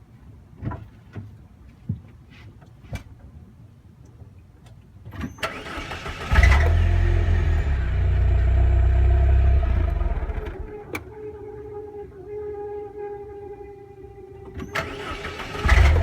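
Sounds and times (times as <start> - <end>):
starter cranking: 5.4 - 10.8, 14.8 - 16.0
car engine idling: 6.2 - 10.8, 14.9 - 16.0.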